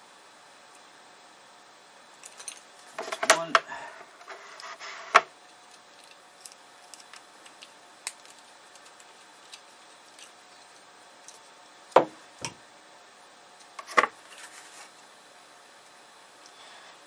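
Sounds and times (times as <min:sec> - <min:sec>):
sharp knocks: 0:12.0 - 0:12.6.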